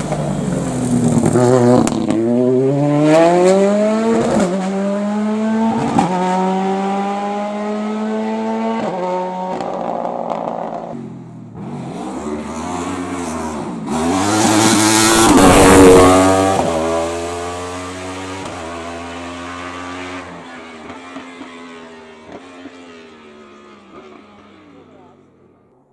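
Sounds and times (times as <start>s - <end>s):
race car engine revving past: 0.0s - 11.0s, 11.6s - 20.4s.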